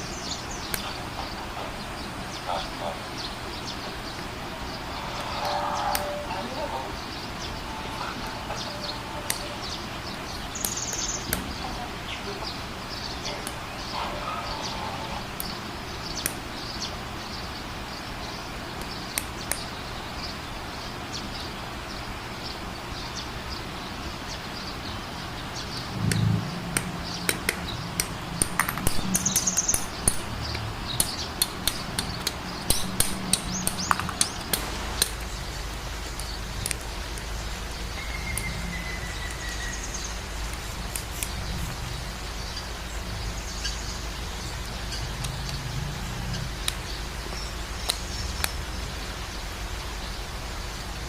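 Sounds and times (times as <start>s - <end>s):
plastic clicks and snaps: 36.0s - 37.3s, 47.8s - 48.6s.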